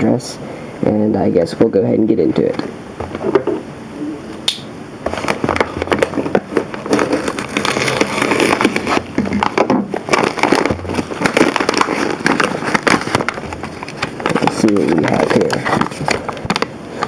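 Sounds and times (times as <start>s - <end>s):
packaging crinkling: 5.0s - 17.0s
packaging tearing: 5.1s - 17.0s.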